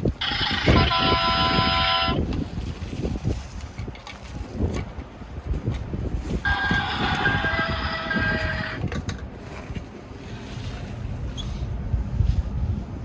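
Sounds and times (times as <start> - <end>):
low rumbling handling noise: 0.0 - 13.0
toy electronic sound effect: 0.2 - 2.2, 6.5 - 8.8.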